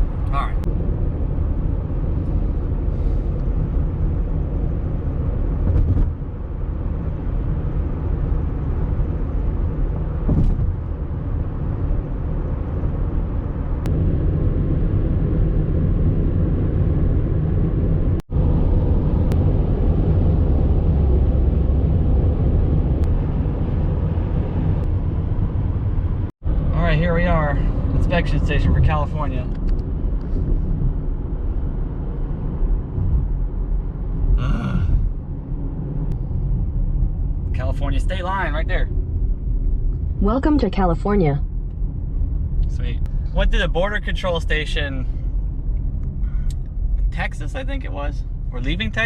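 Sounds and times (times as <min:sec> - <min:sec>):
car cabin rumble at highway speed: 0:00.0 - 0:49.0.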